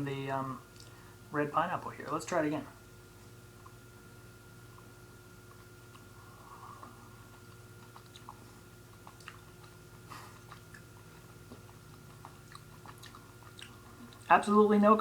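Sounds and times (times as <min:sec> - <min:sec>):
faint steady hum: 0:00.0 - 0:15.0
person chewing: 0:04.7 - 0:14.3.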